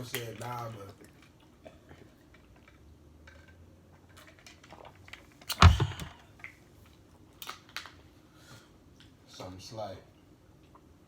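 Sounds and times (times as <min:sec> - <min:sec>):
loud knock: 0:05.6 - 0:06.1.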